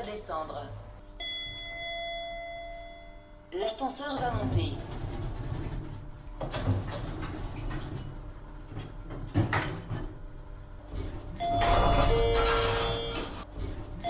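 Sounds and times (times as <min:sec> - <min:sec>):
elevator low hum: 0:00.0 - 0:14.0
elevator doors sliding: 0:03.8 - 0:14.0.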